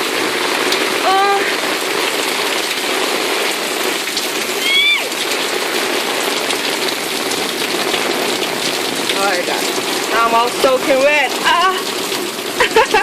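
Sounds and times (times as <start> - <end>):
heavy rain pouring: 0.0 - 13.0
woman exclaiming: 1.0 - 1.6, 4.6 - 5.2, 11.4 - 11.9.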